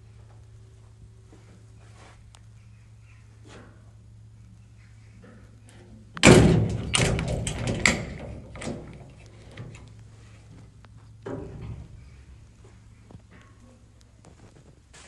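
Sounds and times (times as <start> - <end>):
faint steady hum: 0.0 - 15.0
clatter of knocks and bangs: 6.2 - 9.8.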